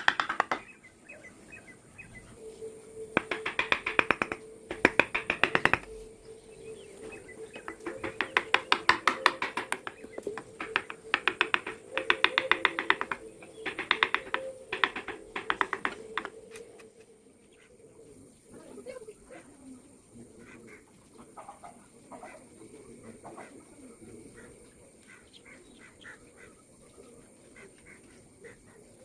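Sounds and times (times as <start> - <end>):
mallet tapping chisel into wood: 0.0 - 0.6, 3.2 - 5.9, 7.6 - 16.3
faint steady tone: 0.8 - 29.0.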